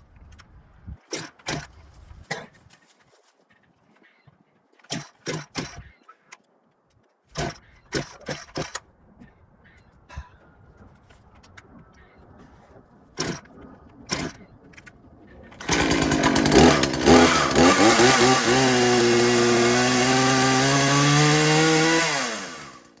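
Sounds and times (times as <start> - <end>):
starter cord pulls: 15.6 - 20.6
chainsaw engine running: 15.6 - 23.0.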